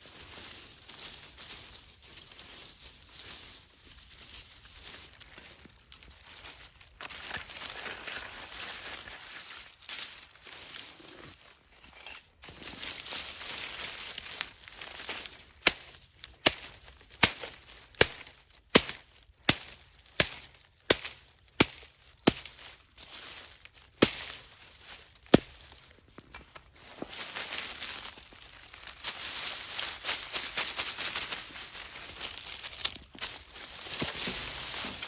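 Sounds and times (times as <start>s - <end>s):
crunching rustling noise: 0.0s - 35.0s
chopping strikes: 16.5s - 22.5s.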